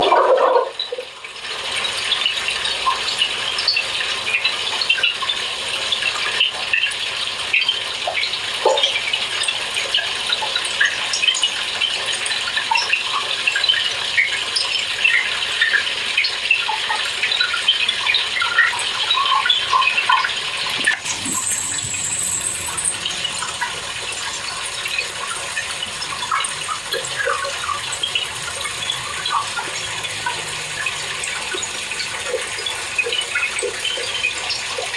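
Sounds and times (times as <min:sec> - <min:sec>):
water gushing into washer tub: 0:14.3 - 0:34.9
high hiss: 0:20.7 - 0:25.6.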